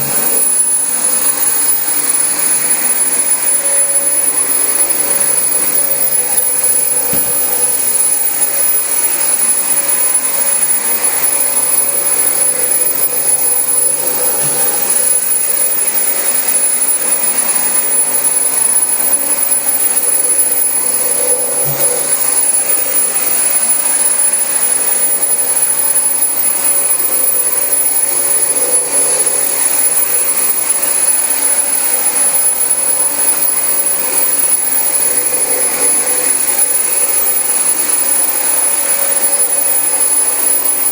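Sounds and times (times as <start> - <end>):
vacuum cleaner on carpet: 0.0 - 5.8, 19.8 - 33.2, 35.1 - 40.4.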